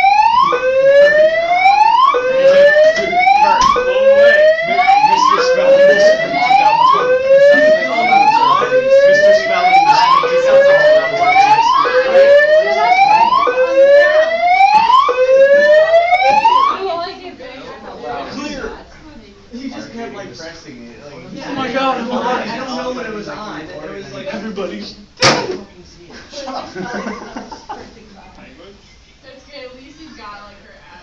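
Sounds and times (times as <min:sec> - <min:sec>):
rising whoop alarm: 0:00.0 - 0:16.8.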